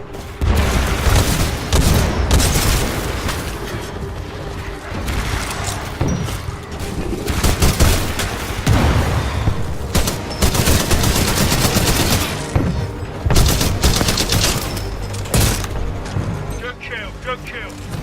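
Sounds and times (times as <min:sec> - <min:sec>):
rapid gunfire: 0:00.4 - 0:03.6, 0:06.7 - 0:09.2, 0:09.8 - 0:12.6, 0:13.3 - 0:14.7.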